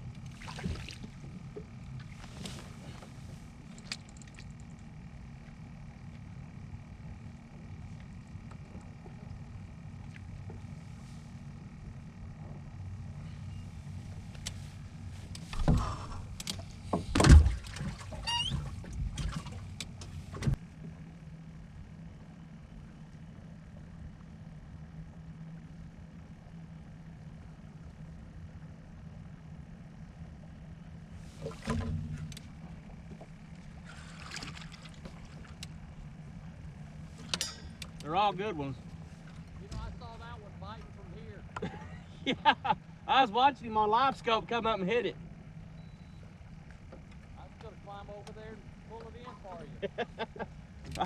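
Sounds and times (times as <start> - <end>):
steady low hum: 0.0 - 51.0
knocks in a boat: 15.5 - 20.9
brief squeak: 18.2 - 18.8
short rustle or splash: 33.9 - 35.6.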